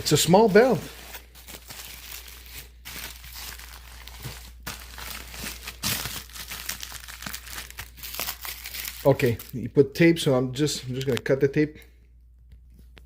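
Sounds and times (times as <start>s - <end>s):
packaging crinkling and rustling: 0.0s - 9.7s.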